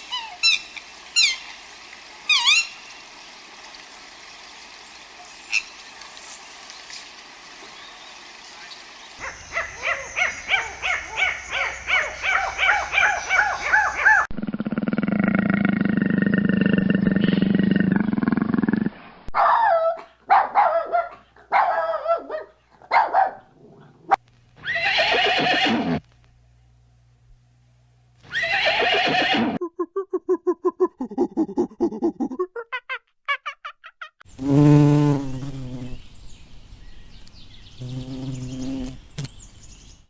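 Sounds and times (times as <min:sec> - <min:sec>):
high animal calls: 0:02.3 - 0:02.8, 0:09.2 - 0:18.8, 0:24.6 - 0:26.0, 0:28.2 - 0:29.6
low drawn-out animal call: 0:09.2 - 0:19.0, 0:24.6 - 0:26.0, 0:28.2 - 0:29.6.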